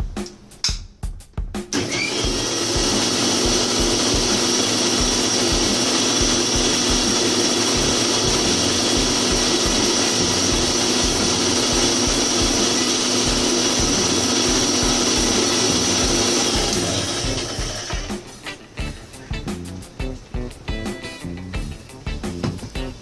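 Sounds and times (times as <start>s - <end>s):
mixer grinder humming and whining: 1.8s - 18.2s.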